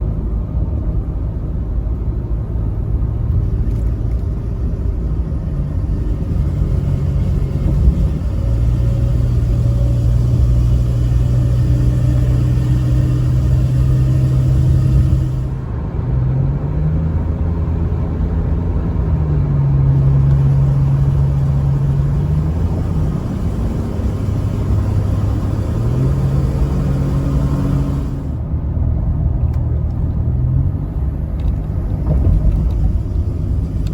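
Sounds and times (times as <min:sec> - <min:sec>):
pickup truck accelerating: 0:00.6 - 0:33.9
droning noise: 0:03.2 - 0:15.8, 0:17.1 - 0:28.4, 0:30.7 - 0:33.9.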